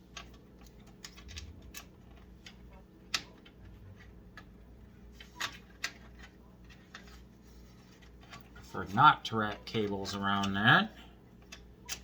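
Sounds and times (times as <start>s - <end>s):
low steady hum: 0.0s - 12.0s
cables and connectors clicking: 11.4s - 12.0s.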